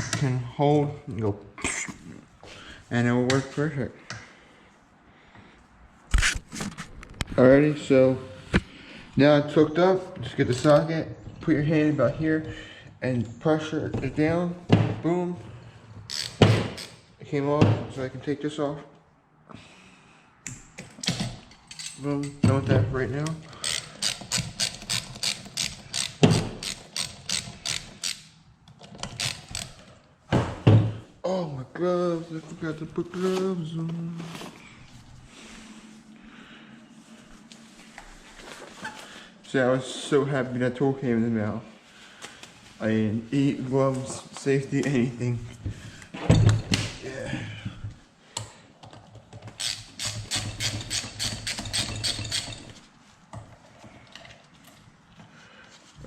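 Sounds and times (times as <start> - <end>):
ratchet wrench clicking: 16.1 - 17.0, 23.6 - 28.3, 29.0 - 29.8, 49.6 - 52.7.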